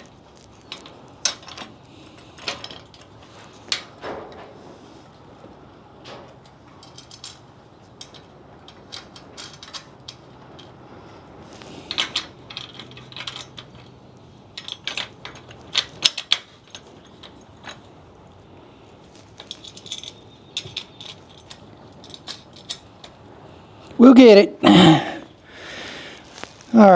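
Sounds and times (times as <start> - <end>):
metal parts clinking: 0.0 - 1.8, 6.8 - 10.7, 11.8 - 17.9, 19.1 - 23.2.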